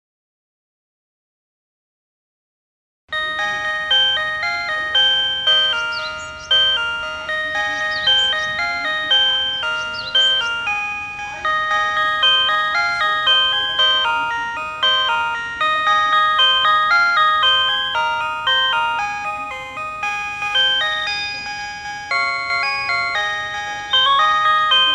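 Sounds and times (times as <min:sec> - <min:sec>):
electronic chime melody: 0:03.1 - 0:24.9.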